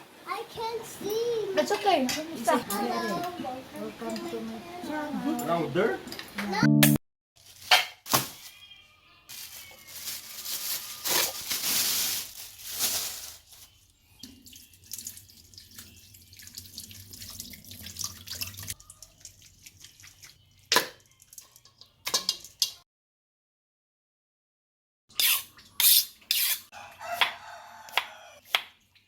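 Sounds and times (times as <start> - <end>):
water trickling: 14.2 - 22.7.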